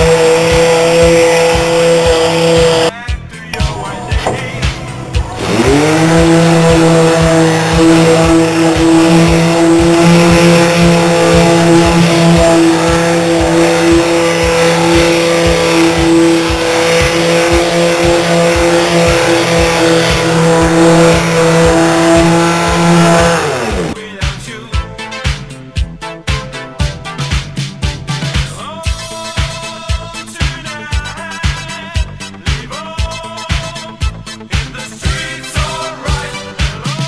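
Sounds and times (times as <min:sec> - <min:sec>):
engine-like drone: 0:00.0 - 0:02.9, 0:03.6 - 0:24.0
low thumping: 0:03.6 - 0:14.9.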